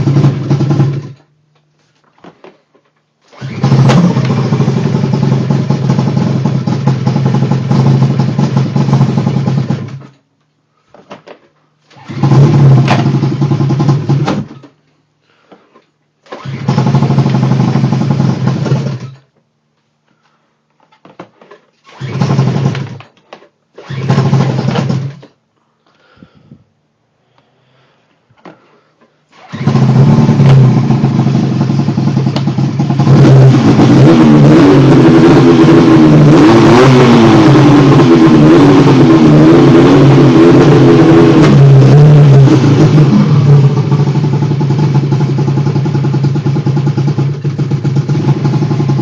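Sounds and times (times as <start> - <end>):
engine running roughly in bursts: 0.0 - 1.2, 3.3 - 10.2, 11.9 - 14.6, 16.3 - 19.2, 21.9 - 23.0, 23.8 - 25.3, 29.3 - 49.0.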